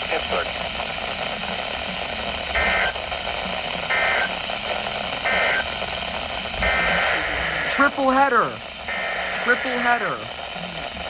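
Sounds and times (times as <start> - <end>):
radio static: 0.0 - 11.0
two-tone digital data bursts: 2.6 - 3.0, 3.9 - 4.4, 5.2 - 5.8, 6.6 - 10.2.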